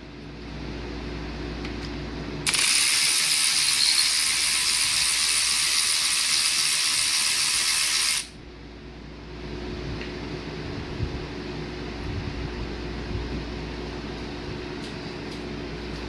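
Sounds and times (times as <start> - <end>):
air ratchet hissing and buzzing: 2.5 - 8.4.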